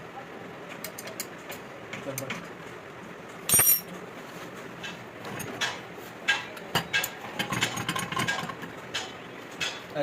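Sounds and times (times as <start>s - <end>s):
low background hum: 0.0s - 10.0s
metal clinks and knocks: 3.5s - 3.9s.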